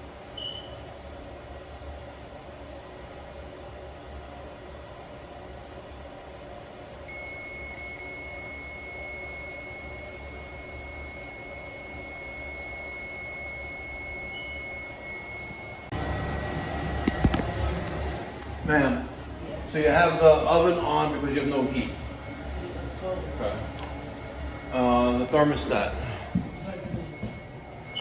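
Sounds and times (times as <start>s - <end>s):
low steady hum: 6.9s - 28.0s
high-pitched electronic tone: 7.1s - 15.9s
room noise: 7.1s - 28.0s.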